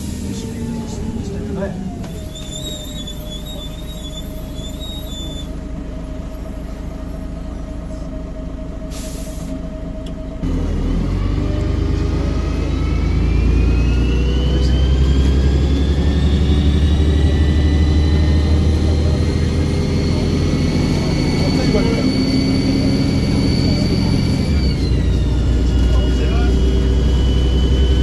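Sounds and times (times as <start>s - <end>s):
bus diesel engine: 0.0s - 28.0s
turbo whistle rising: 2.1s - 5.6s.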